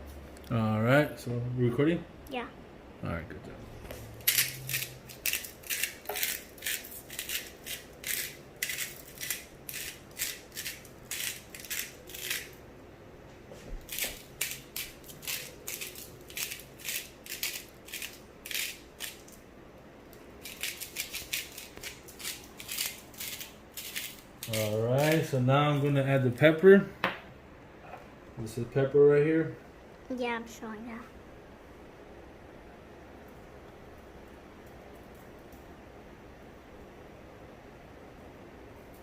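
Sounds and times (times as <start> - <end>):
seasoning shaker rattling: 4.2 - 12.6, 13.8 - 19.4, 20.4 - 25.3.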